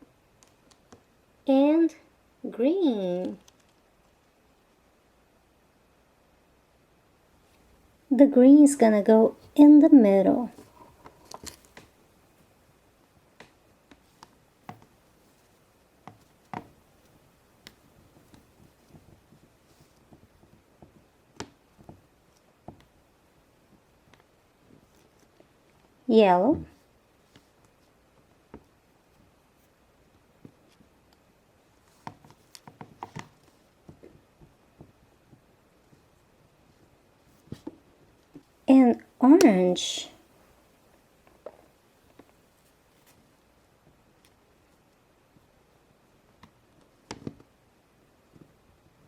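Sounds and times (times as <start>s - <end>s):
soft taps of handling modelling clay: 13.2s - 26.0s, 26.7s - 38.6s, 46.2s - 47.6s, 48.2s - 49.0s.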